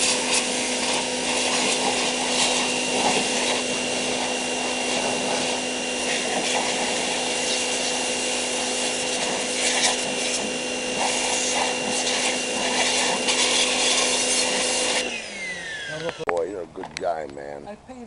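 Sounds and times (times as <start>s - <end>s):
water spray hissing: 0.0s - 15.1s
pressure washer motor hum: 0.0s - 17.7s.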